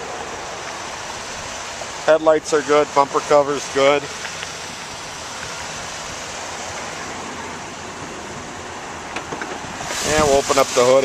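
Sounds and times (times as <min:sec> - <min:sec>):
steady rushing noise: 0:00.0 - 0:11.0.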